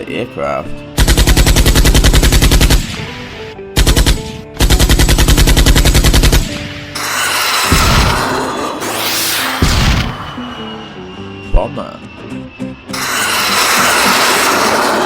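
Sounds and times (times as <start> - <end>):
background music: 0.0 - 15.0
machine-gun fire bursts: 1.0 - 3.1, 3.8 - 6.6
rushing noise: 7.0 - 15.0.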